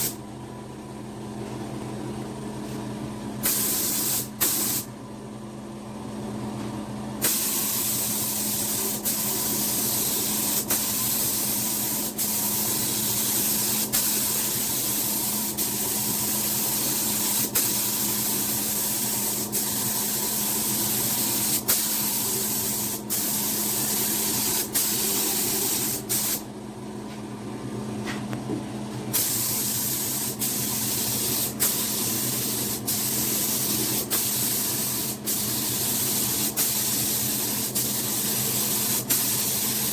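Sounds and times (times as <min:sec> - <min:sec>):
paint spray hissing: 0:03.4 - 0:04.9, 0:07.2 - 0:26.4, 0:29.2 - 0:39.9.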